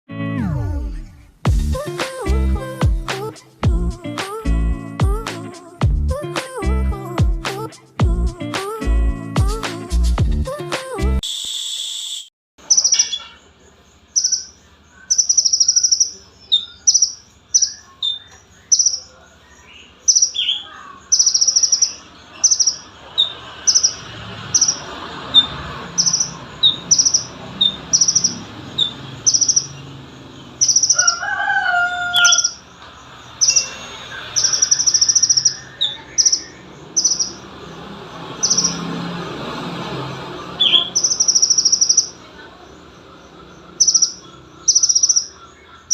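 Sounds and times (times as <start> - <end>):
bird chirping: 12.6 - 45.9.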